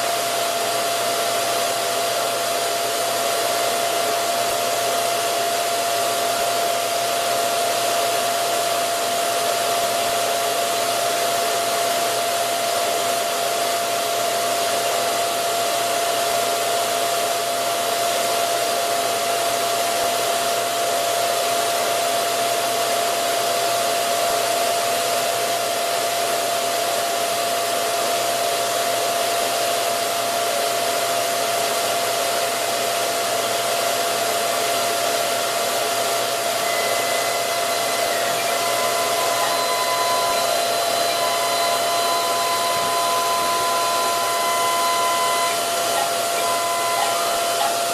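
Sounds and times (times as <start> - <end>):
workshop machinery motor whirring: 33.8 - 47.9.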